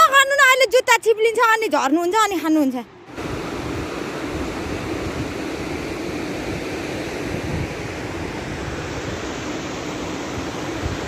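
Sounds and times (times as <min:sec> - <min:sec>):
steady rushing noise: 0:02.8 - 0:11.0.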